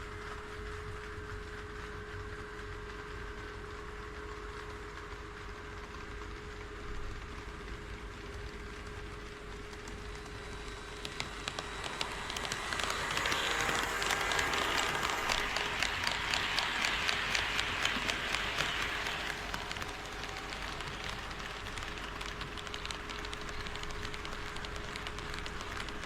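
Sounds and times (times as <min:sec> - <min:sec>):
model train wheels clicking: 0:05.9 - 0:26.0.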